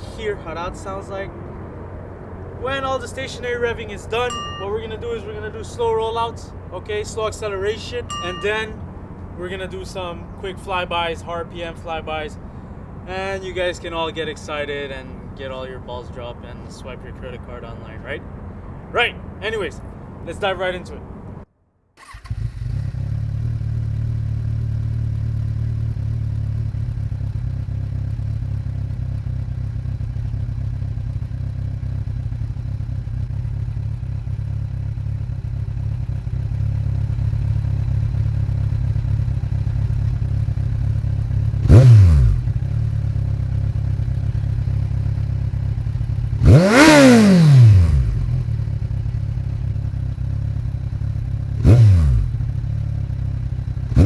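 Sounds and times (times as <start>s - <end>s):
motorcycle engine idling: 22.3s - 54.0s
engine revving: 41.5s - 43.0s, 46.2s - 49.1s, 51.5s - 52.7s.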